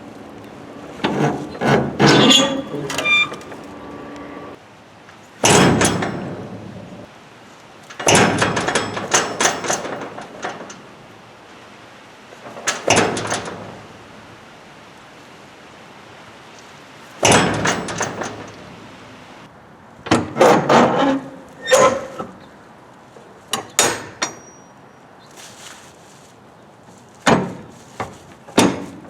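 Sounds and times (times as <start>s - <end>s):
metal door clanking and scraping: 0.6s - 4.6s, 5.4s - 7.1s, 7.9s - 10.9s, 12.4s - 14.0s, 17.2s - 19.5s, 20.1s - 22.4s, 23.5s - 24.7s, 27.3s - 29.0s
high squeal: 1.5s - 4.6s.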